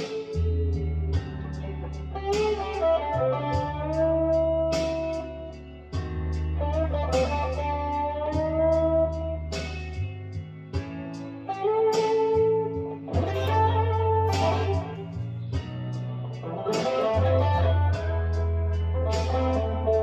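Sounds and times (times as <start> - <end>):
electric guitar lead line: 11.4 - 20.0.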